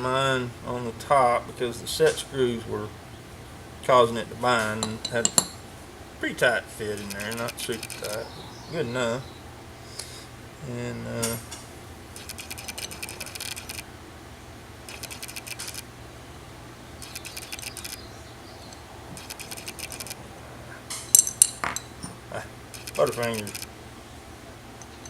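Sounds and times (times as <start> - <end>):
small steel parts clinking: 4.6 - 5.6, 12.2 - 13.8, 20.9 - 22.2, 22.8 - 23.6, 24.8 - 25.0
high-pitched buzzing: 12.1 - 14.0, 14.9 - 15.8
metal part dropped: 20.9 - 22.2.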